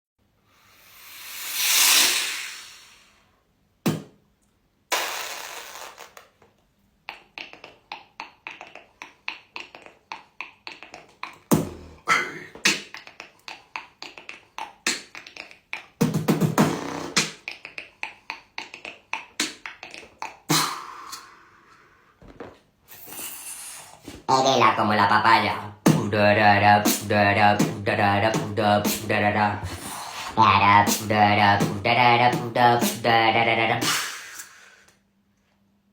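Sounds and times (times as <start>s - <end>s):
beatboxing hissing: 0.6s - 3.2s, 3.8s - 4.1s, 4.9s - 6.4s, 7.1s - 21.7s, 22.9s - 34.9s
beatboxing mouth clicks and pops: 3.8s - 4.2s, 4.9s - 21.3s, 22.9s - 34.6s.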